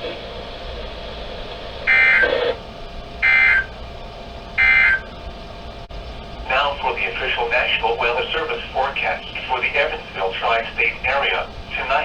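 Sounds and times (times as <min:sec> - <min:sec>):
short digital data bursts: 0:01.9 - 0:02.5, 0:03.2 - 0:03.7, 0:04.6 - 0:05.1.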